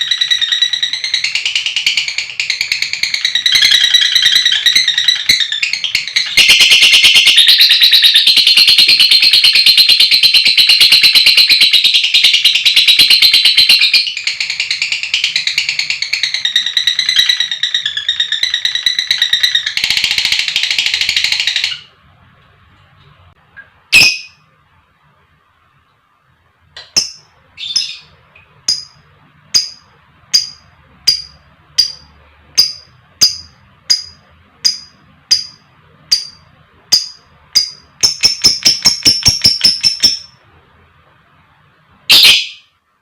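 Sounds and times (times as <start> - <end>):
bird chattering trill: 0.0 - 21.9, 24.0 - 24.4, 26.9 - 29.0, 29.6 - 40.4
loud sharp bird call: 23.9 - 24.4, 42.1 - 42.8.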